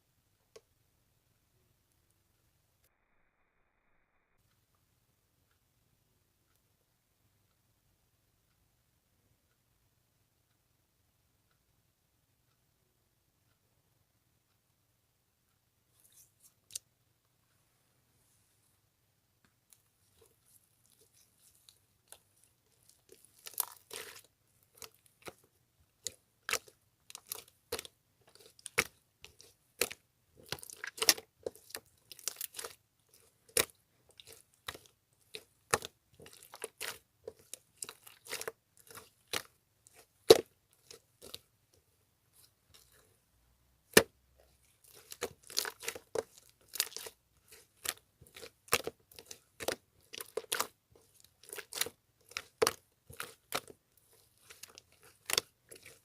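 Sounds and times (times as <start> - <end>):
slime clicking and crackling: 20.1 - 41.5, 43.8 - 56.0.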